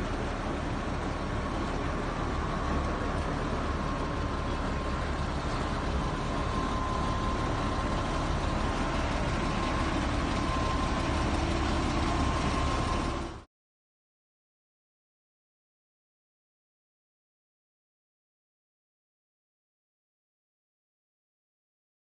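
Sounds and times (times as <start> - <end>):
heavy machinery rumbling: 0.0 - 13.5
thin steady whine: 0.0 - 13.5.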